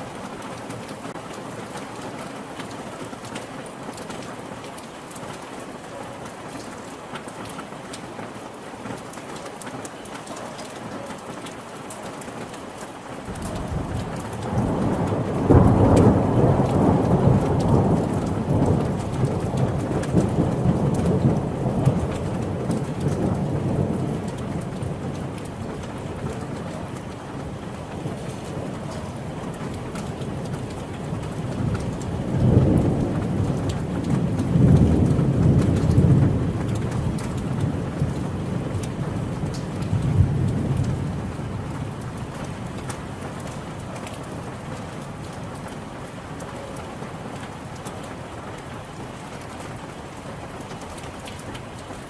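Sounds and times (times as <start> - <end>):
steady rain falling: 0.0 - 52.0
thunder rumbling: 13.2 - 47.0.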